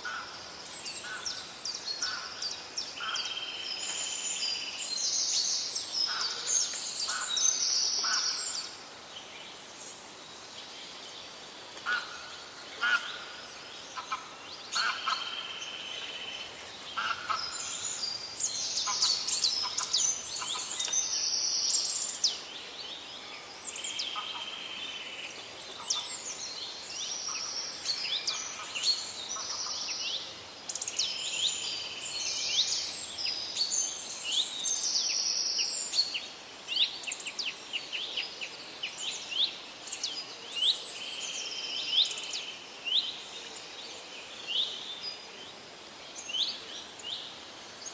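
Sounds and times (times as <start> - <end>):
birds chirping and trilling: 0.0 - 47.9.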